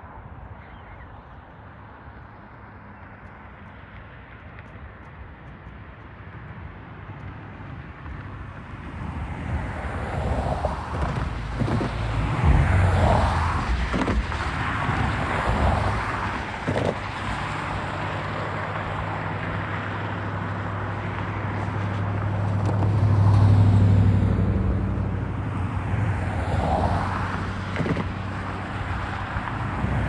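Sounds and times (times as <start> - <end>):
train wheels rumbling on rails: 9.6 - 18.1.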